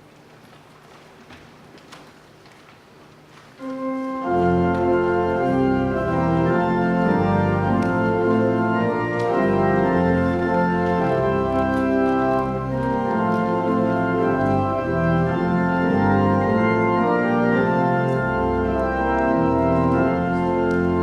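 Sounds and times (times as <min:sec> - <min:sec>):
church organ chords: 0:03.6 - 0:21.0.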